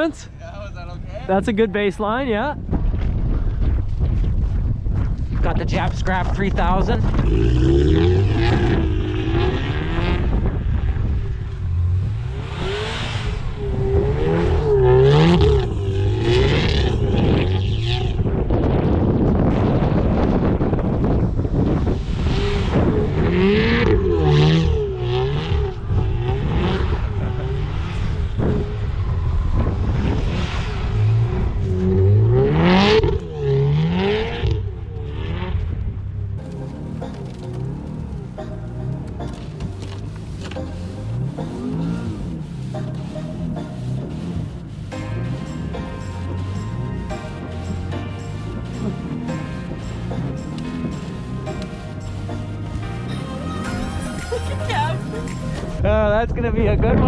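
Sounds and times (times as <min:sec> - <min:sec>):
car engine revving hard: 0:06.9 - 0:18.8, 0:21.8 - 0:35.6, 0:36.4 - 0:55.8.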